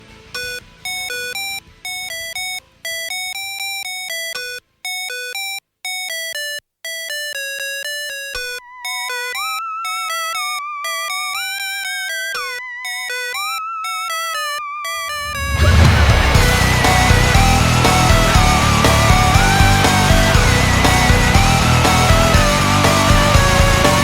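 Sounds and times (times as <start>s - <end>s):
synthesizer melody: 0.4s - 24.0s
wavering synth lead tone: 7.9s - 24.0s.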